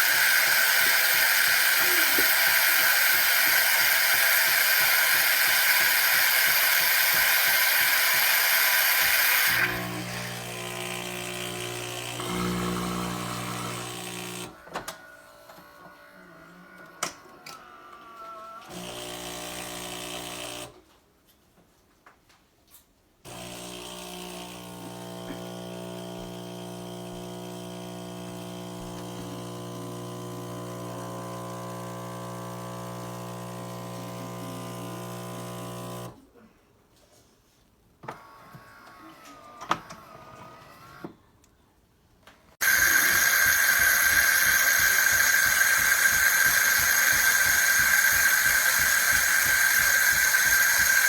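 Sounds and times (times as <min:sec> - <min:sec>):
espresso machine humming: 0:00.0 - 0:14.6, 0:18.7 - 0:20.7, 0:23.3 - 0:36.2, 0:42.6 - 0:51.0
espresso machine clicks: 0:42.6 - 0:51.0.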